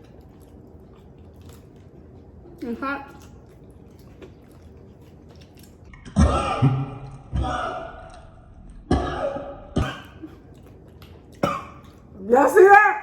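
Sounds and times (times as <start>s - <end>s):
man coughing hard: 8.9s - 10.4s, 11.4s - 11.8s.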